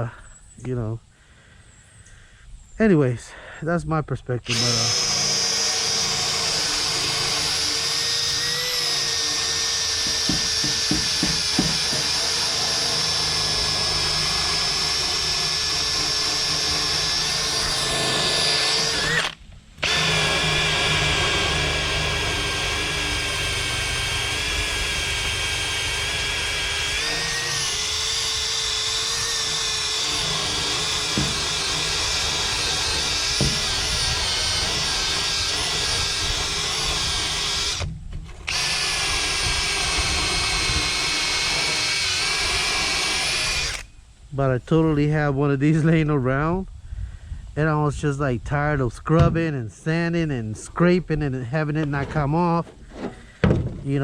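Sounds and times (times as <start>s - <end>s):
power drill whining: 4.4s - 44.1s.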